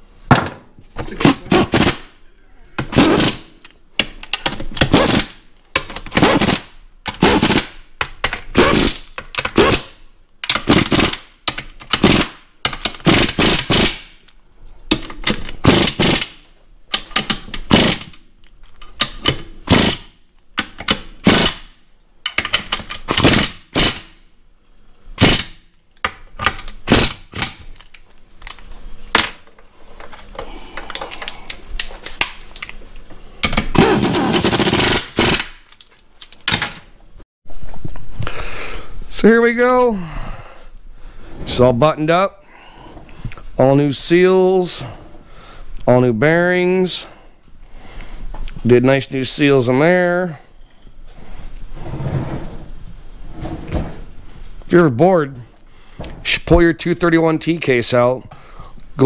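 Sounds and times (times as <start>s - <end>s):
impact wrench rattling bursts: 1.2s - 2.2s, 2.8s - 3.6s, 4.5s - 14.2s, 15.6s - 16.4s, 17.1s - 18.2s, 19.0s - 20.2s, 21.0s - 24.2s, 25.2s - 25.6s, 33.4s - 35.7s.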